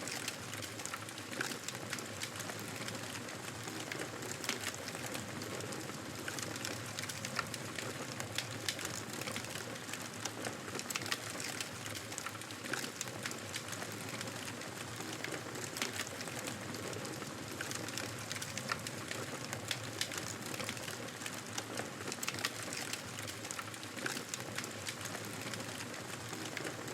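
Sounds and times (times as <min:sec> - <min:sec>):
campfire crackling and popping: 0:06.2 - 0:26.9.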